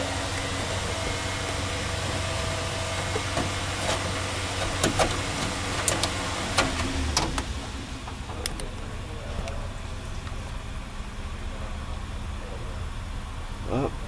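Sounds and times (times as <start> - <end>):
sharp clicks and knocks: 0.0 - 9.6
air hissing: 0.0 - 14.0
smoke machine humming: 0.0 - 14.0.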